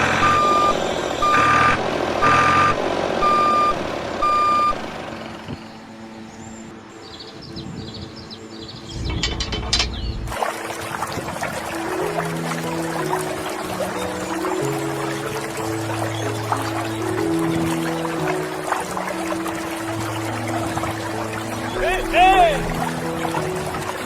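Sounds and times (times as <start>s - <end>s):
vehicle reversing beeper: 0.0s - 4.9s
background music: 5.8s - 24.0s.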